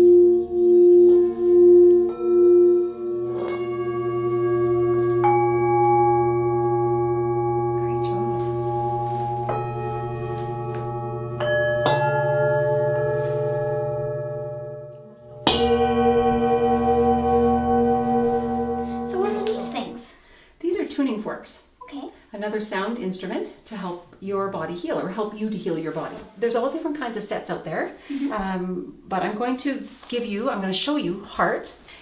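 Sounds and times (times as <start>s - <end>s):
singing bowls ringing: 0.0s - 20.1s.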